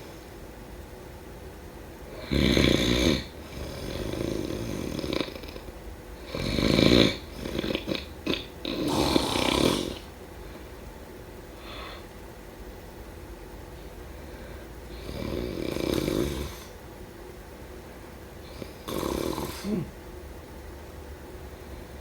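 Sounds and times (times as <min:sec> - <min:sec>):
person snoring: 0:02.1 - 0:10.1, 0:14.9 - 0:16.7, 0:18.4 - 0:19.9
short snorts: 0:02.2 - 0:10.1, 0:18.5 - 0:20.0.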